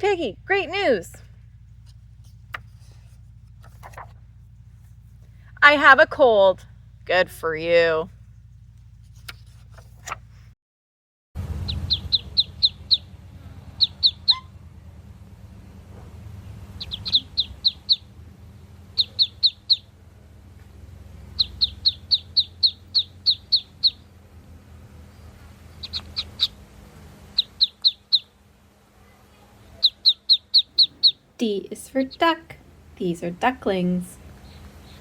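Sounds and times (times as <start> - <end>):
low steady rumble: 0.0 - 10.6, 11.4 - 35.0
ducklings peeping: 11.6 - 13.1, 13.7 - 14.6, 16.7 - 18.2, 18.8 - 19.9, 21.3 - 24.1, 25.6 - 28.4, 29.6 - 32.4, 34.3 - 35.0.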